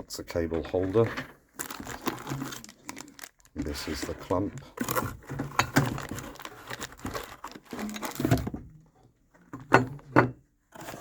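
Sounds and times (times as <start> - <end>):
parts clattering and rustling: 0.3 - 11.0.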